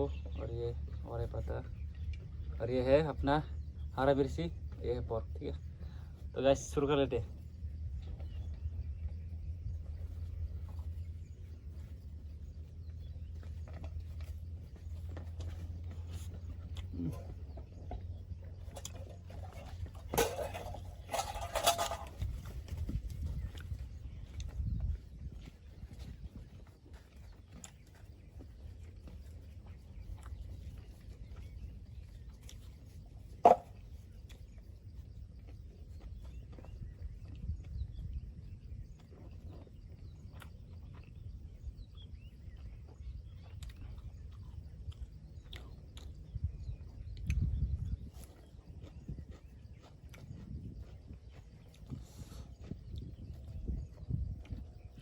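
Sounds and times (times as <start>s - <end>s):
low background rumble: 0.0s - 55.0s
low steady hum: 0.0s - 55.0s
chewing and mouth sounds: 13.2s - 20.1s, 23.1s - 55.0s.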